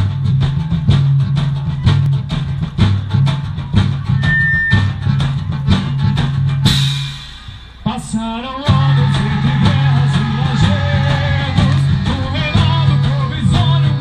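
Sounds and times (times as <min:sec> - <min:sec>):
band music: 0:00.0 - 0:14.0
rising sliding notes: 0:04.0 - 0:06.0
cymbal crash: 0:06.7 - 0:07.9.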